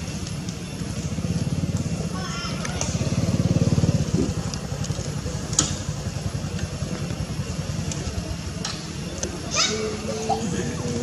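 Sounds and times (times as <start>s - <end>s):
small engine pulsing: 2.8s - 11.0s.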